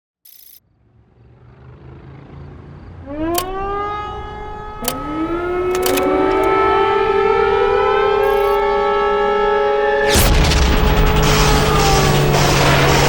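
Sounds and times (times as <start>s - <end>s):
sharp clicks: 0.3s - 0.6s, 3.3s - 3.8s, 4.8s - 7.4s, 8.1s - 10.3s
air raid sirens wailing: 2.2s - 13.0s.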